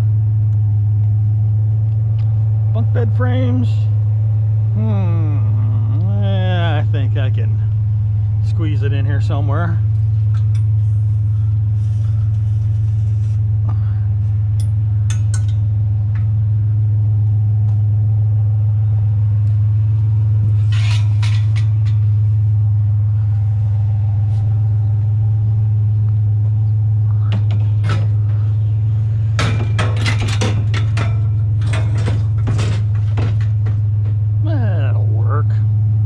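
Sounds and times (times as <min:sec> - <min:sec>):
truck engine droning: 0:00.0 - 0:36.0
metal clanks and rattles: 0:08.4 - 0:13.2, 0:14.5 - 0:16.4, 0:20.4 - 0:22.5, 0:27.1 - 0:34.4.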